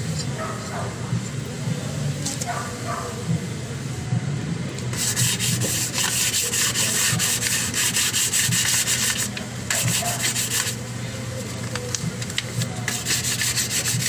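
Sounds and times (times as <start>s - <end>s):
sandpaper scraping metal disc: 4.9s - 10.8s, 12.6s - 14.0s.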